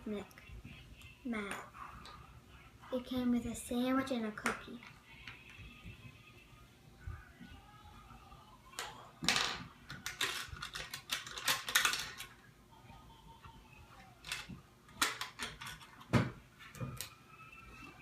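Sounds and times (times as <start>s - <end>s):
plastic pieces clicking and clattering: 8.8s - 12.4s, 14.2s - 16.1s.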